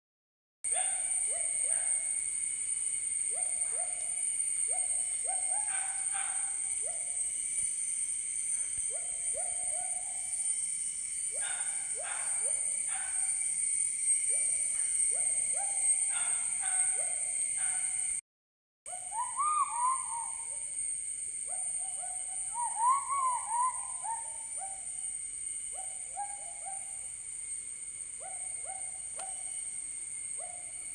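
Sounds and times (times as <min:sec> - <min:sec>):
insects droning: 0:00.7 - 0:18.2, 0:18.9 - 0:30.9
hoot-like animal calls: 0:14.3 - 0:18.0, 0:18.9 - 0:20.8, 0:21.5 - 0:24.9, 0:25.7 - 0:27.1.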